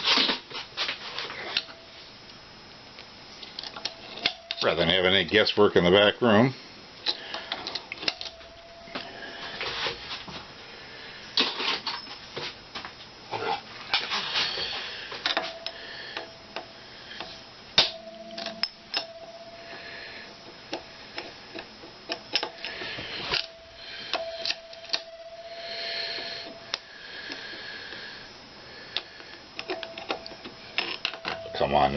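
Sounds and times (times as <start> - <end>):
tools clicking and tapping: 7.0 - 8.4, 15.2 - 19.2, 20.7 - 25.1, 29.0 - 31.5.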